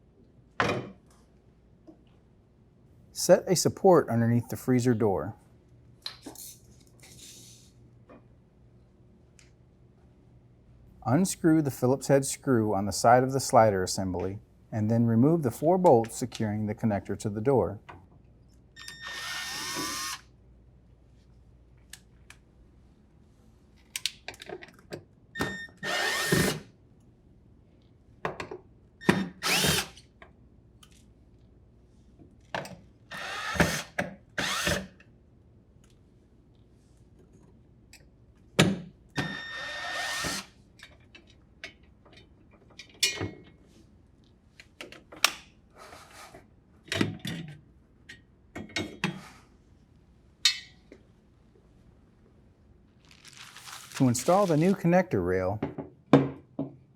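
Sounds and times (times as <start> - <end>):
cordless drill motor whine: 18.8 - 20.2, 39.2 - 40.4.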